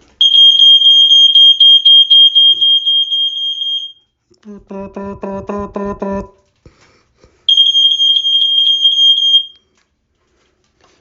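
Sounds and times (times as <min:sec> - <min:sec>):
smoke alarm shrill tone: 0:00.2 - 0:04.1, 0:07.5 - 0:09.6.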